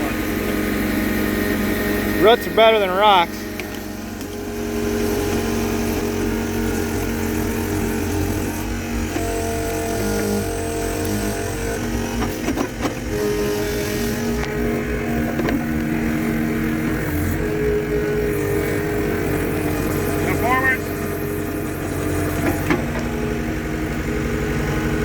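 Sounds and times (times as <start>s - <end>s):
auger engine running under load: 0.0s - 25.0s.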